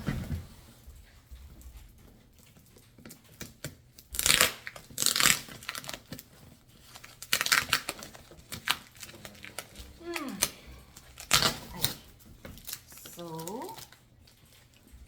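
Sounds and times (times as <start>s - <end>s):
packaging crinkling and rustling: 0.0s - 15.0s
cardboard tearing: 4.0s - 14.8s.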